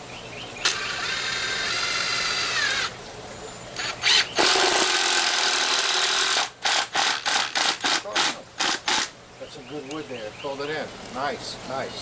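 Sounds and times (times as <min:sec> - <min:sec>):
power drill driving screw: 0:00.6 - 0:02.9, 0:03.8 - 0:09.1.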